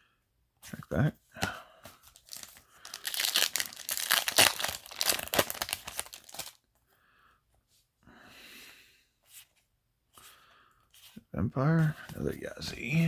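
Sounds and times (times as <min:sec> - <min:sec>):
cards rustling: 0:01.5 - 0:06.6
foil wrapper crinkling: 0:02.1 - 0:06.6.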